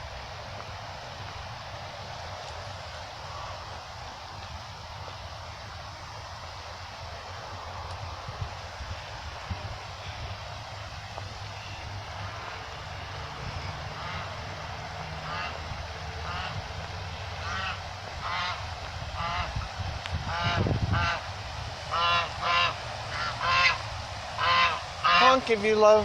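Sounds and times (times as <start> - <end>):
geese honking: 2.4 - 4.0, 9.8 - 26.0.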